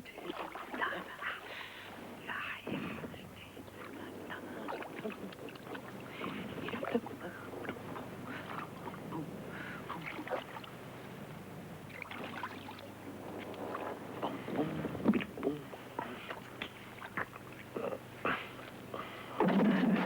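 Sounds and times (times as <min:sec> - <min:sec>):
bathwater sloshing and splashing: 0:00.2 - 0:01.8, 0:04.6 - 0:10.8, 0:11.9 - 0:17.8.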